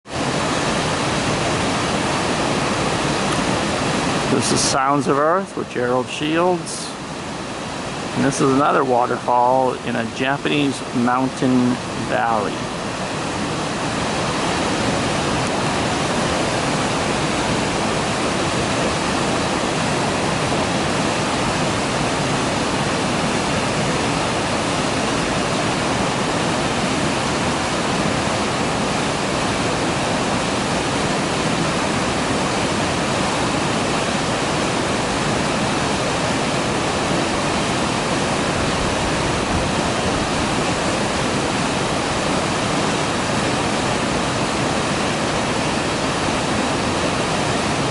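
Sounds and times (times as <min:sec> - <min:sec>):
waterfall rushing: 0:00.0 - 0:47.9.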